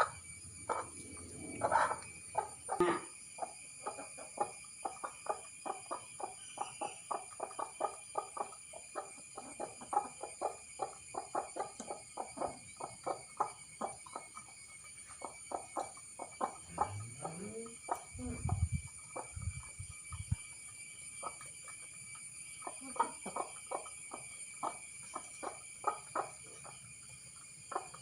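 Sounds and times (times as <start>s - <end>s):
hen clucking: 0.0s - 14.3s, 15.2s - 18.6s, 22.6s - 26.4s.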